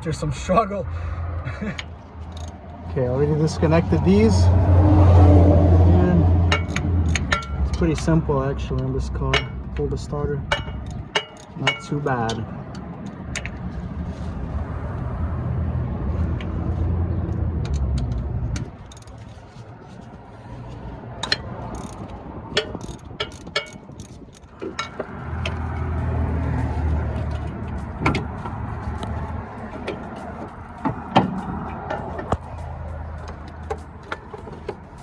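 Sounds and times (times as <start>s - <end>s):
car engine running: 25.0s - 35.0s.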